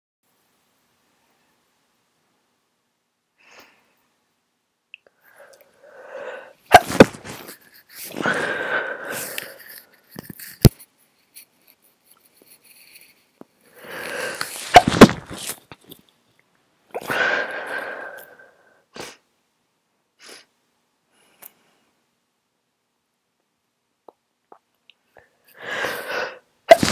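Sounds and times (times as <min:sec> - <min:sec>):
noisy breath: 0:03.4 - 0:04.1, 0:05.1 - 0:10.8, 0:13.6 - 0:14.8, 0:17.0 - 0:19.2, 0:25.5 - 0:26.9
gasping breath: 0:05.2 - 0:06.6, 0:08.0 - 0:09.9, 0:13.7 - 0:14.7, 0:17.0 - 0:18.7, 0:25.5 - 0:26.9
person sneezing: 0:06.7 - 0:09.8, 0:13.8 - 0:15.6, 0:17.0 - 0:18.1, 0:25.6 - 0:26.9.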